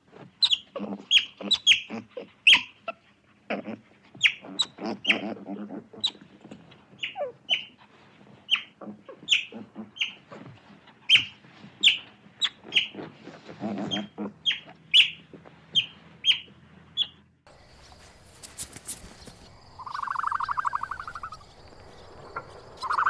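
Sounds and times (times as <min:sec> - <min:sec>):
animal low drawn-out call: 0:17.5 - 0:23.0
animal short high calls: 0:17.7 - 0:21.5.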